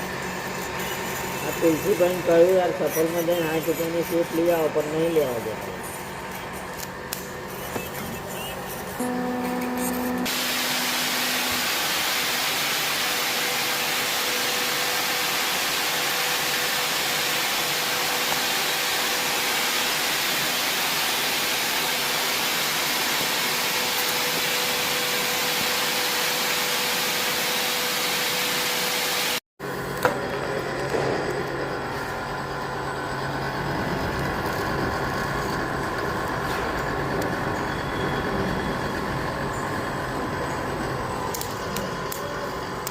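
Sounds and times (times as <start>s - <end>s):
faint hum: 5.6s - 12.3s
welding hiss: 6.7s - 29.4s.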